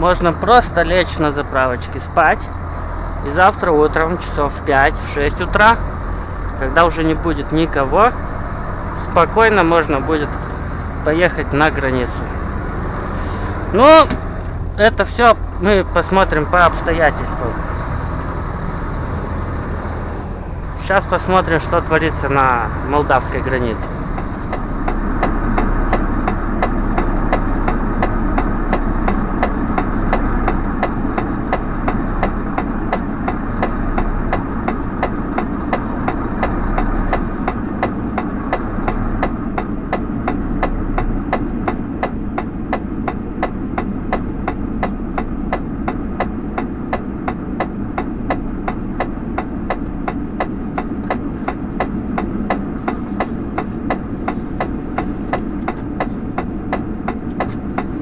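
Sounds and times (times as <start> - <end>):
truck engine running: 0.0 - 58.0
regular clicking: 23.1 - 58.0.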